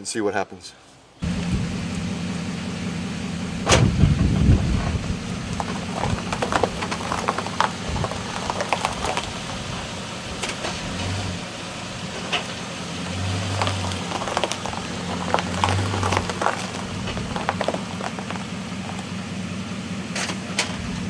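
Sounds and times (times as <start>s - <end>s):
pickup truck engine idling: 1.2s - 21.0s
tire chains clicking and clinking: 5.4s - 11.2s, 13.0s - 19.2s.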